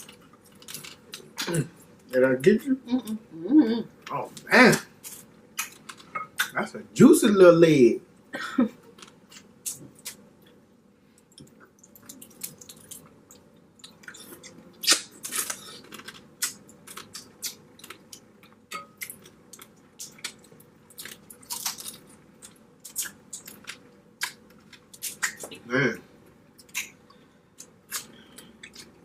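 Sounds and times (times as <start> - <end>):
crab shell crunching: 11.6 - 25.5.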